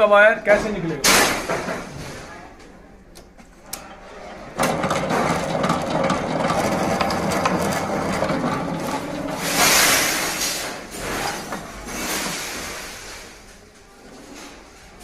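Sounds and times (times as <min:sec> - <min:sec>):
wire-stripping machine running: 0:03.5 - 0:13.0.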